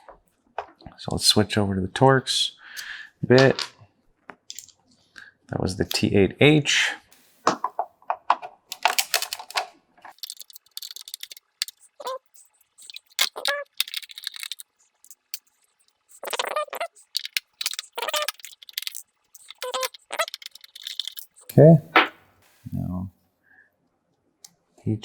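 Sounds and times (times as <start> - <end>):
screwdriver clicks and screw rattles: 8.7 - 12.1, 12.8 - 15.4, 17.0 - 21.6.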